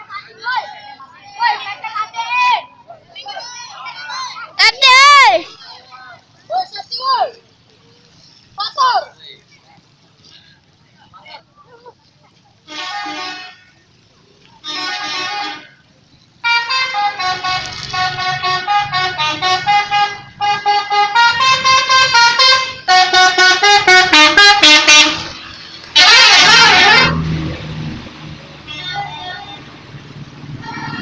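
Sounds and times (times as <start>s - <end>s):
multi-tone air horn melody: 12.7s - 13.7s, 14.6s - 15.7s, 16.4s - 27.2s
air horn honks: 16.4s - 25.4s, 26.0s - 27.2s
loud noisy blast: 17.3s - 27.8s.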